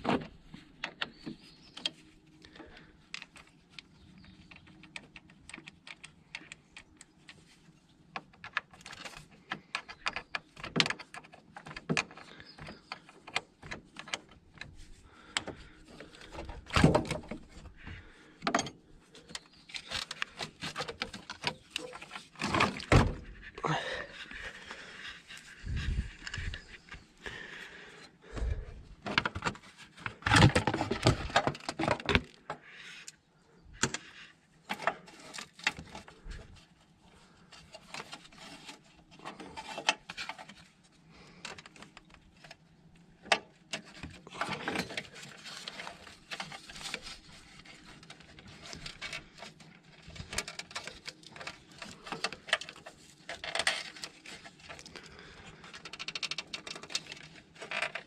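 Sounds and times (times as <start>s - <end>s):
tools handling car parts: 41.4s - 58.0s.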